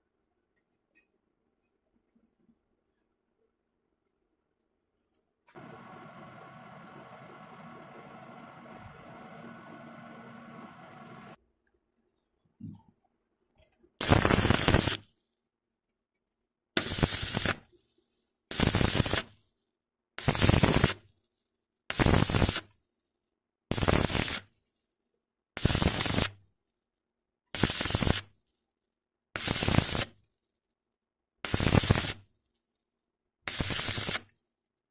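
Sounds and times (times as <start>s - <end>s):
welding arc crackling: 14.0s - 15.0s, 16.8s - 17.6s, 18.5s - 19.3s, 20.2s - 21.0s, 22.0s - 22.6s, 23.7s - 24.4s, 25.6s - 26.3s, 27.6s - 28.3s, 29.4s - 30.1s, 31.5s - 32.2s, 33.5s - 34.2s.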